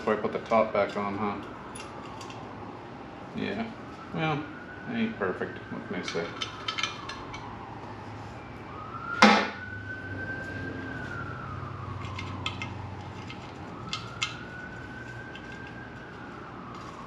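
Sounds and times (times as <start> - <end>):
metal tools clicking: 6.1 - 7.5
thin rising and falling tone: 7.5 - 13.0.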